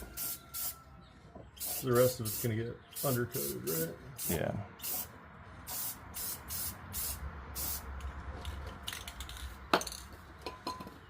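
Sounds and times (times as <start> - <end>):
aerosol spray can hissing: 1.6 - 2.4.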